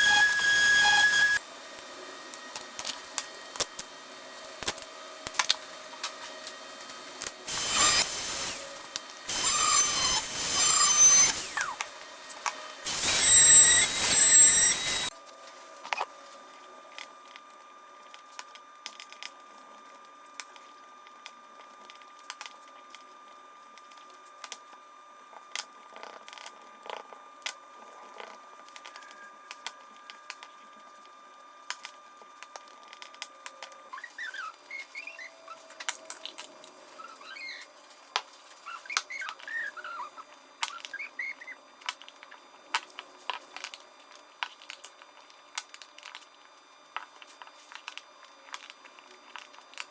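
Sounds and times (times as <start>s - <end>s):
faint high whine: 0.0s - 1.4s, 7.5s - 11.9s, 12.9s - 15.1s
short chirps: 12.9s - 15.1s.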